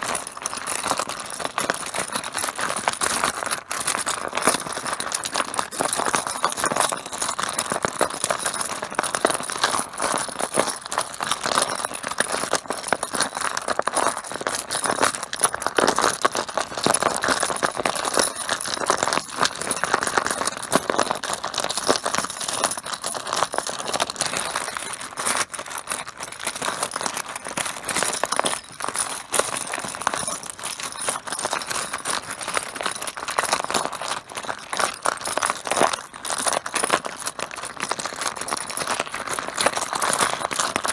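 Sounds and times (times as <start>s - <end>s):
mahjong tiles clattering: 4.7s - 25.0s, 27.4s - 33.0s.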